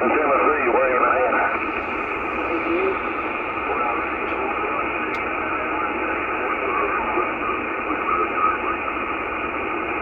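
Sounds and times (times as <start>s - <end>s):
radio static hiss: 0.0s - 10.0s
radio click: 4.2s - 5.4s.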